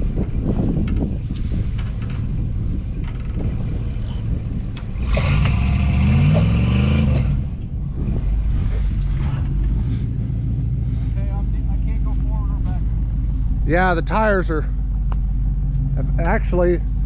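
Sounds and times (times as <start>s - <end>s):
pickup truck engine revving: 3.7s - 17.0s.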